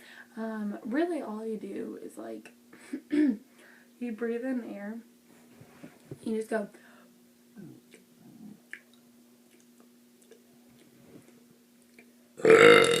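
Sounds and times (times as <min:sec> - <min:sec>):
steady low hum: 0:00.0 - 0:13.0
loud burp: 0:12.4 - 0:13.0.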